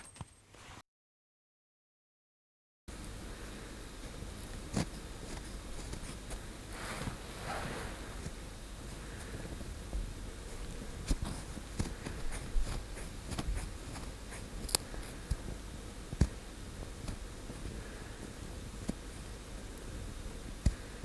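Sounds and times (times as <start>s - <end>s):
ear pick scraping skin: 6.0s - 8.4s.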